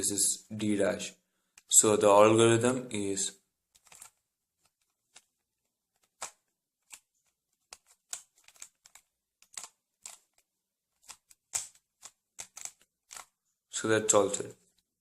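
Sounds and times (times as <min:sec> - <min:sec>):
puzzle cube turning clicks: 0:03.7 - 0:13.4.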